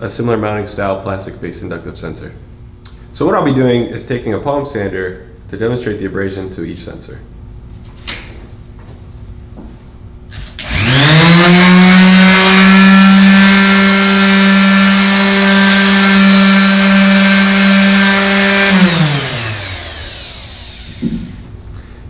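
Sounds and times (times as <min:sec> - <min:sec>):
sander abrading plastic and metal: 0:10.3 - 0:21.5
electric sander whining: 0:10.4 - 0:21.5.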